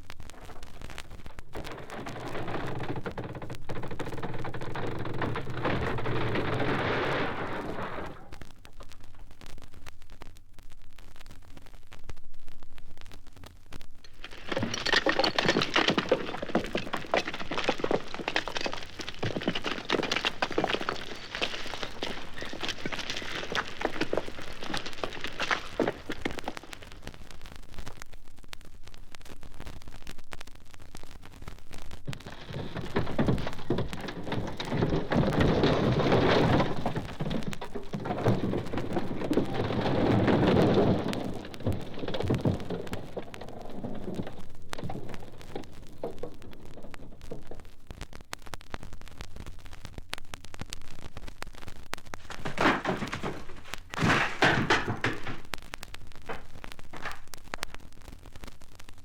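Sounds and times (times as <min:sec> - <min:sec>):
rumbling crashing noise: 0:00.4 - 0:08.8, 0:14.0 - 0:27.2, 0:32.0 - 0:47.9, 0:52.2 - 0:57.8.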